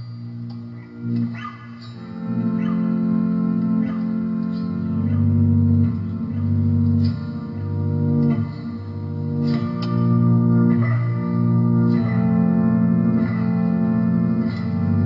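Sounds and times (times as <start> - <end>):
guitar chords ringing: 0.0 - 15.0.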